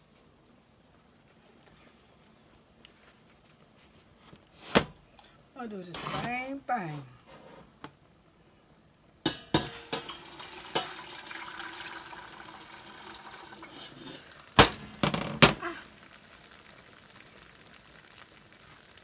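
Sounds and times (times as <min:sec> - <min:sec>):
cookware knocking: 0:09.3 - 0:11.0
pots and dishes clattering: 0:09.3 - 0:16.0
steady liquid hiss: 0:09.5 - 0:19.0.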